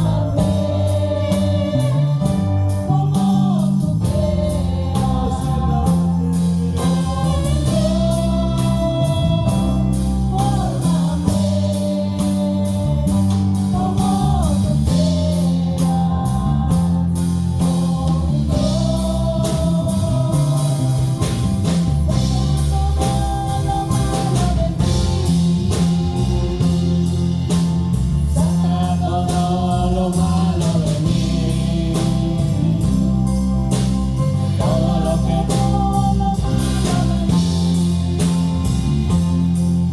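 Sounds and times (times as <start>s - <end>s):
person singing: 0.0s - 27.4s, 28.3s - 33.5s, 34.4s - 39.2s
worship band playing: 0.0s - 39.9s.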